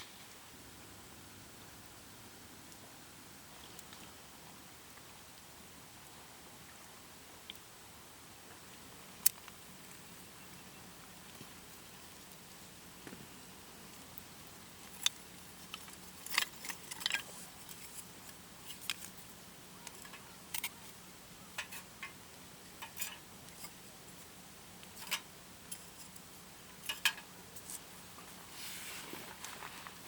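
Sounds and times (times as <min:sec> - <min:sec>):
faint steady hiss: 0:00.0 - 0:30.0
small hard objects clinking: 0:14.8 - 0:19.2, 0:19.8 - 0:20.8, 0:21.5 - 0:22.2, 0:22.8 - 0:23.8, 0:26.8 - 0:27.9.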